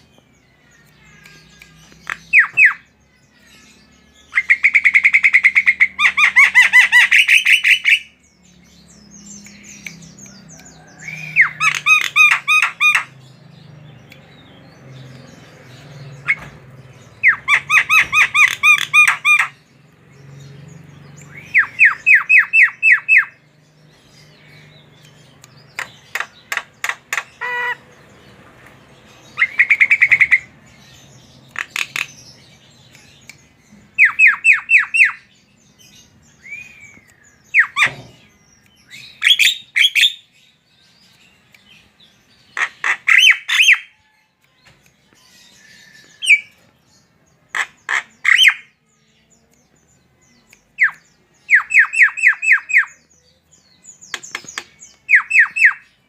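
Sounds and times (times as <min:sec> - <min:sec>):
bird clicks: 0:25.0 - 0:27.4, 0:31.5 - 0:32.2, 0:54.1 - 0:55.5.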